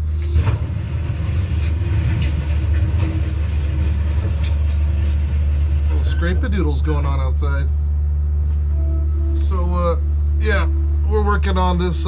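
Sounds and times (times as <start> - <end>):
machine scraping driveway: 0.0 - 7.9
heavy engine rumble: 0.0 - 12.0.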